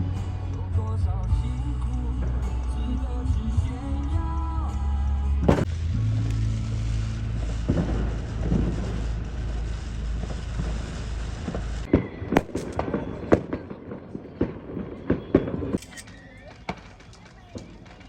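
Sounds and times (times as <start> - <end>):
low rumble: 0.0 - 13.9
fireworks crackling: 0.0 - 18.0
sharp firecracker bangs: 5.4 - 18.0.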